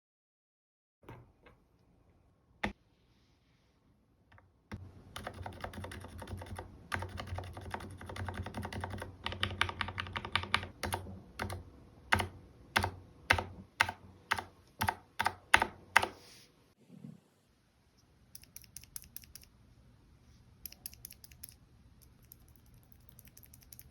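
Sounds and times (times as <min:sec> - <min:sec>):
mechanical keyboard typing: 0:05.1 - 0:16.1, 0:22.2 - 0:23.9.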